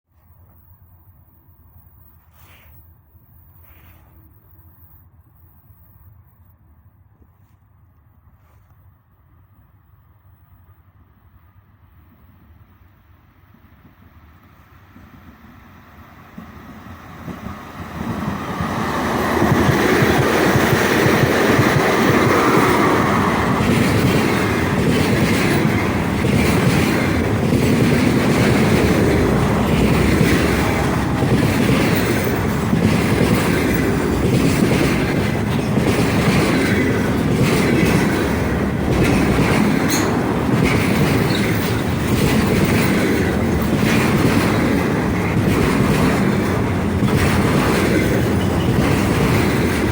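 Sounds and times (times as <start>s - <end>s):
freight train rumbling: 8.2s - 49.9s
wheels clacking over rail joints: 16.2s - 49.9s.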